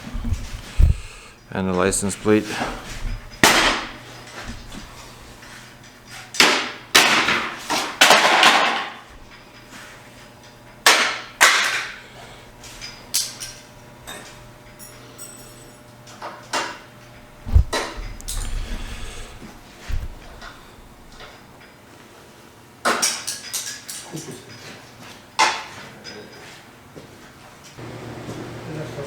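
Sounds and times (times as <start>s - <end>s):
knocks and clatters on bumper parts: 6.4s - 9.0s.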